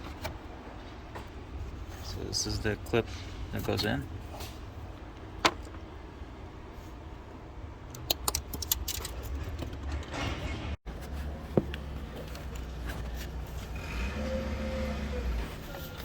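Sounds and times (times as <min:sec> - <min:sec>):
small parts clicking and clinking: 0:08.0 - 0:10.0.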